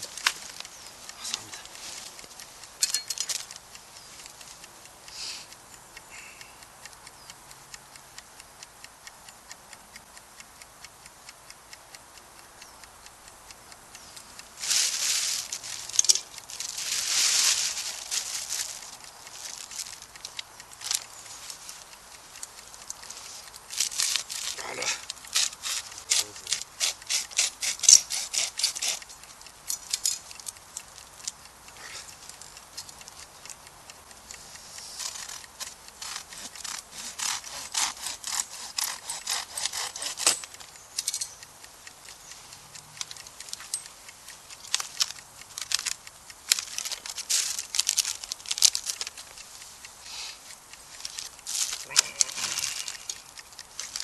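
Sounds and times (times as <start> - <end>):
hand saw cutting wood: 23.8 - 29.1, 34.8 - 40.6.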